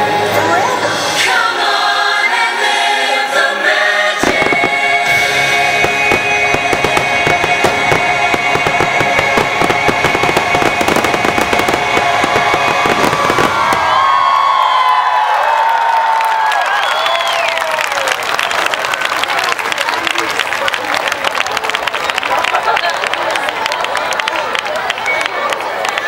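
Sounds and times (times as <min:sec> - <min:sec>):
choir singing: 0:00.0 - 0:13.5
orchestral chords: 0:00.0 - 0:13.7
firework bursts and crackles: 0:04.2 - 0:14.9.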